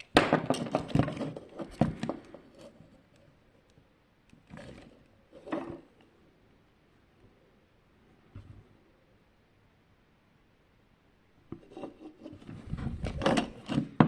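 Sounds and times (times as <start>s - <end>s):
soft handling noises: 0.6s - 6.3s.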